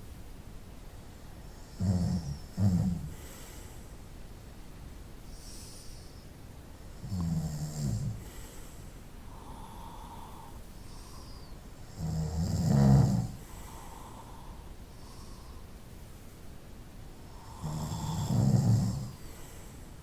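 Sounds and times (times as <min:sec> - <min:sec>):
soft breaths: 0:00.6 - 0:20.0
person snoring: 0:01.7 - 0:03.2, 0:07.0 - 0:08.4, 0:11.9 - 0:15.5, 0:17.3 - 0:19.2.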